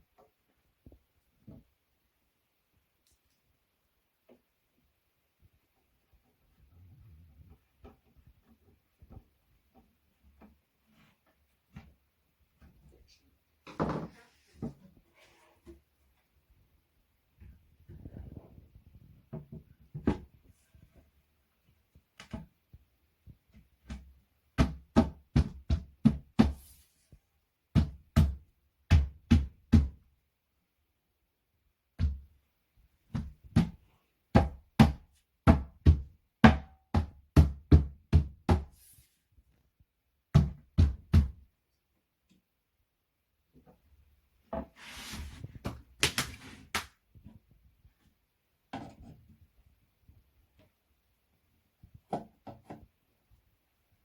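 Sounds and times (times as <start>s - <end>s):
rustling scrape: 44.7s - 46.8s.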